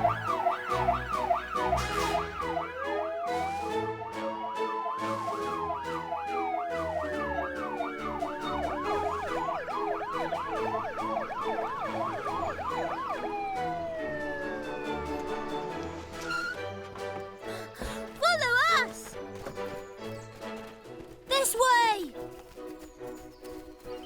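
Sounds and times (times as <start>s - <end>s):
cartoon ambulance siren: 0.0s - 16.6s, 17.7s - 19.1s
background music: 0.0s - 24.0s.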